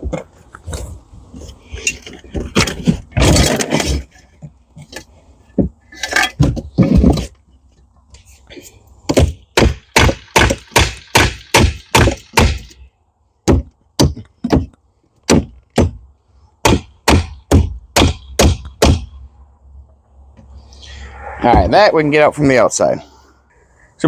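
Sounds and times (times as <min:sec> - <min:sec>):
heavy blows on wood: 0:13.4 - 0:19.2.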